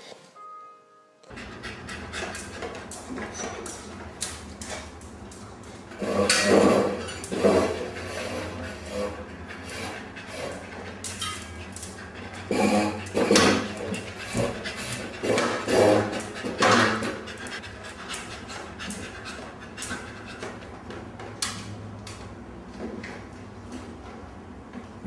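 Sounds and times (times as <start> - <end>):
dog panting: 1.3 - 3.9, 7.2 - 20.8.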